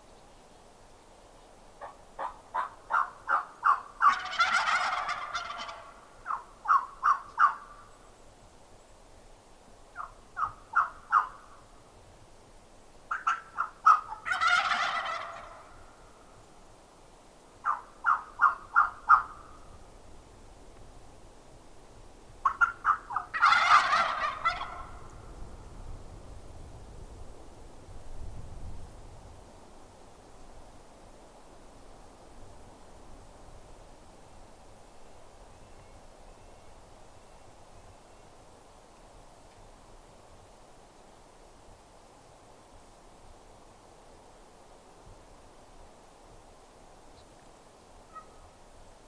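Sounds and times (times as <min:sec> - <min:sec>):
turkey yelping: 0:01.8 - 0:07.8, 0:10.0 - 0:11.4, 0:13.1 - 0:15.8, 0:17.6 - 0:19.4, 0:22.4 - 0:25.0, 0:48.1 - 0:48.4
turkey gobbling: 0:01.8 - 0:07.9, 0:10.0 - 0:11.5, 0:13.1 - 0:15.8, 0:17.6 - 0:19.5, 0:22.4 - 0:25.1, 0:48.1 - 0:48.4.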